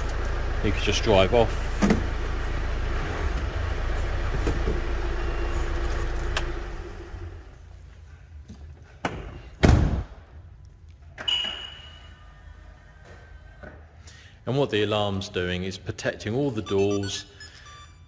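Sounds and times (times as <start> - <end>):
van engine rumble: 0.0 - 8.0
short high beep: 11.2 - 12.2, 16.5 - 18.0.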